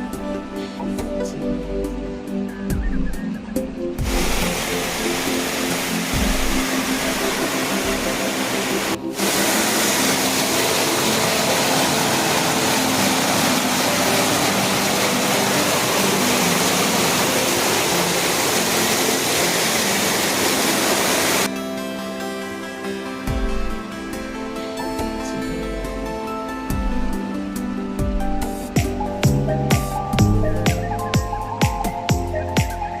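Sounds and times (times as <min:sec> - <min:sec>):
soft background music: 0:00.0 - 0:33.0
waterfall rushing: 0:04.0 - 0:21.5.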